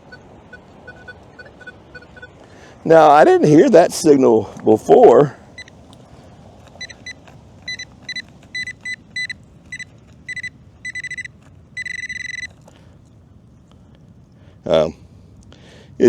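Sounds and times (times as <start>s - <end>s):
metal detector buzzing tone: 0.0s - 2.4s, 6.8s - 12.5s
metal detector beeping: 0.0s - 2.5s, 5.6s - 5.8s, 6.8s - 12.6s.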